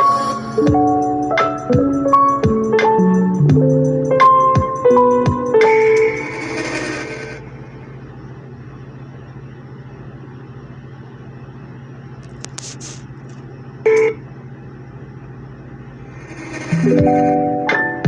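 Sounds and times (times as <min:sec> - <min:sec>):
music: 0:00.0 - 0:07.3, 0:16.7 - 0:18.0
steady low hum: 0:00.0 - 0:17.8
short electronic beep: 0:13.9 - 0:14.2.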